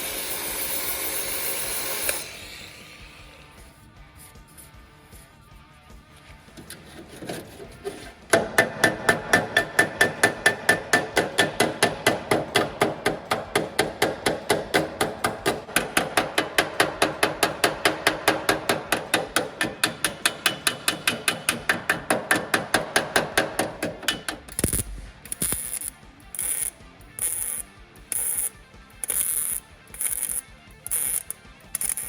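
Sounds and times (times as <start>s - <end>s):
hammer striking metal: 6.6s - 32.0s.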